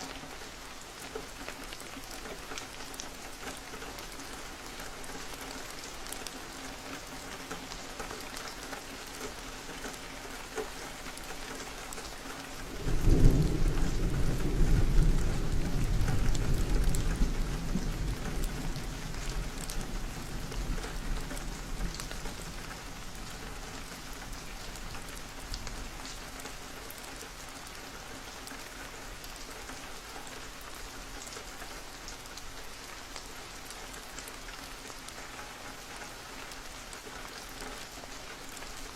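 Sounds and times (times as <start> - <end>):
steady rain falling: 0.0 - 38.9
thunder rumbling: 12.7 - 23.3.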